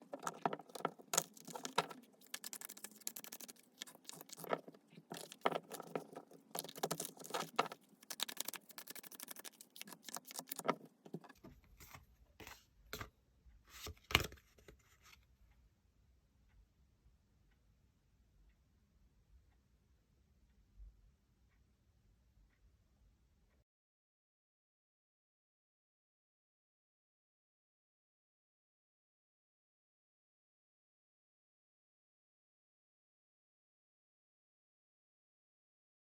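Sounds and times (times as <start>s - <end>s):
cards being shuffled: 0.1s - 11.2s.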